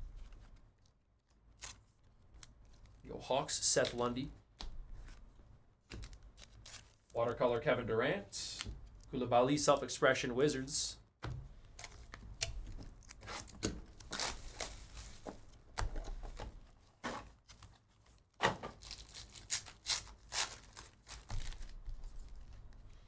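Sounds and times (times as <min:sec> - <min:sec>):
wrappers crinkling: 0:05.9 - 0:07.2, 0:12.9 - 0:16.5, 0:17.4 - 0:23.0
card packs tearing open: 0:11.9 - 0:15.4, 0:18.7 - 0:22.6.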